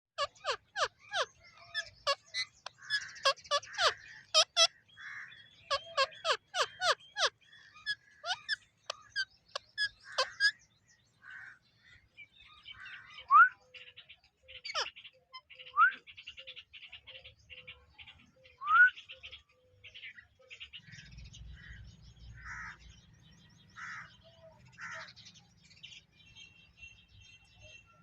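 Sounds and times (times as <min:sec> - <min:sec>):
parakeet chatter: 0:00.2 - 0:10.6, 0:14.5 - 0:15.5
parakeets squawking: 0:00.2 - 0:10.6, 0:14.5 - 0:15.1, 0:22.4 - 0:22.9.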